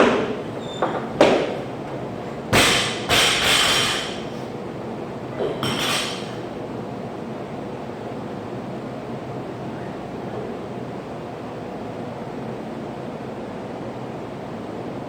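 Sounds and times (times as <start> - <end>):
echoing thuds and knocks: 0.0 - 4.0.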